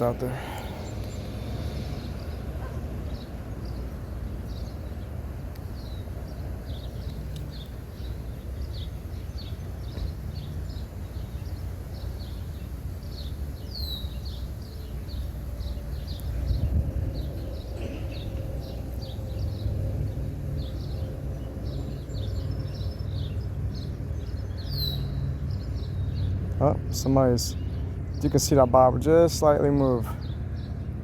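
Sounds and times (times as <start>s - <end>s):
birds chirping: 0.0s - 31.0s
steady low rumble: 14.6s - 24.5s.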